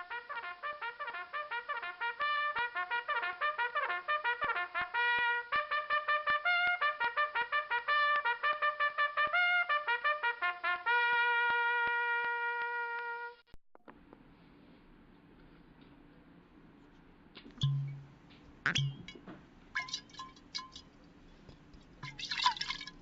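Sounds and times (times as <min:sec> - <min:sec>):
brass tune of short notes: 0:00.0 - 0:13.4.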